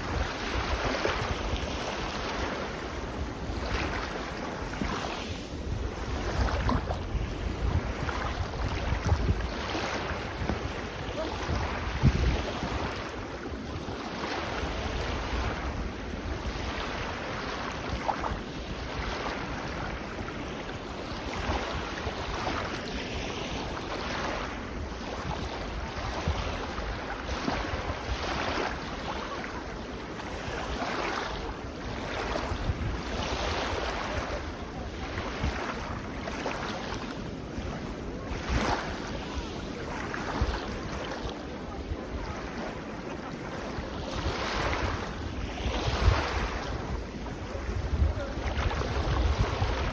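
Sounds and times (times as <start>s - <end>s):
wind buffeting microphone: 0.0s - 19.5s, 32.4s - 36.1s, 43.9s - 49.9s
small waves washing on beach: 0.0s - 49.9s.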